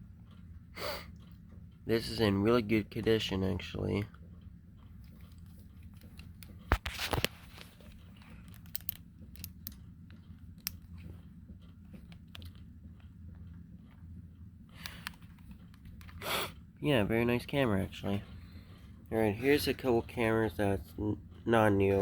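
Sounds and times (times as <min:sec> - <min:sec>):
low steady hum: 0:00.0 - 0:22.0
camera handling clicks and rubbing: 0:06.0 - 0:09.8.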